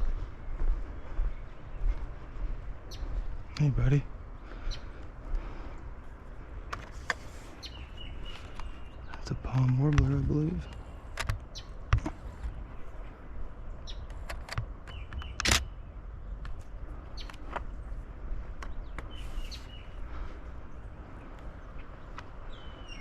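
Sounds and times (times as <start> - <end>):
low steady background noise: 0.0 - 23.0
small clicks: 14.0 - 15.7.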